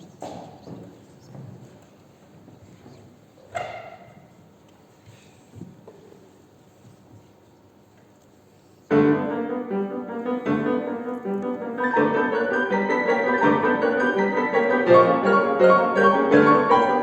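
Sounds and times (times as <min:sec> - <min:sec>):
piano playing quick notes: 0:08.9 - 0:17.0.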